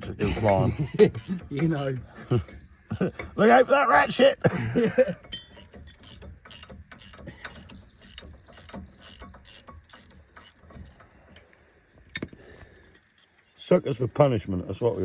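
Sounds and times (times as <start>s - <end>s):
ratchet wrench clicking: 0.3s - 11.0s.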